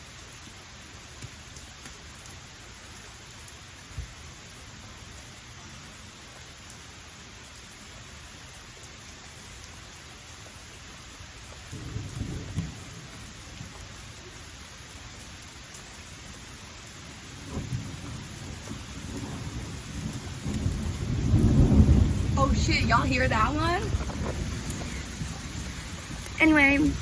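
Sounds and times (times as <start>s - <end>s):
steady rain hiss: 0.0s - 27.0s
thunder rumbling: 11.7s - 13.8s, 17.2s - 27.0s.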